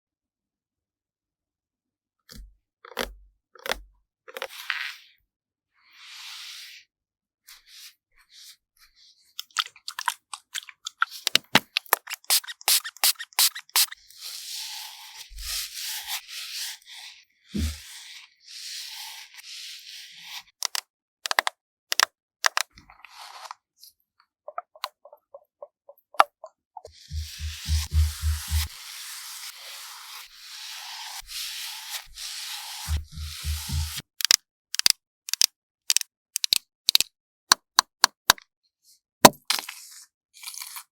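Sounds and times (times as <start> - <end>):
scratchy rubbing strokes: 17.6 - 17.9, 26.9 - 34.0.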